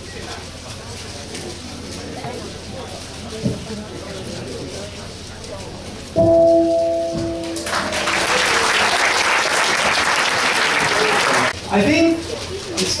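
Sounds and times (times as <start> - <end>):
ringing metallic strike: 6.2 - 8.4
audience applause: 7.4 - 11.6.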